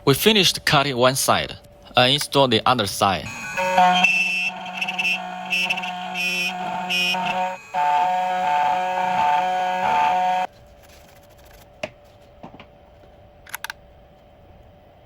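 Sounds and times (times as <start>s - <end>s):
key cutting machine whine: 3.2s - 10.5s.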